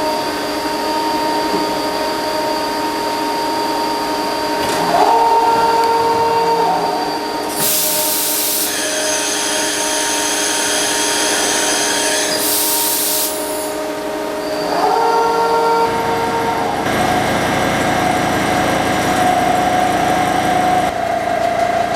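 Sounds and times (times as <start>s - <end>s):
machining center whine: 0.0s - 21.9s
loud hiss: 7.3s - 13.9s.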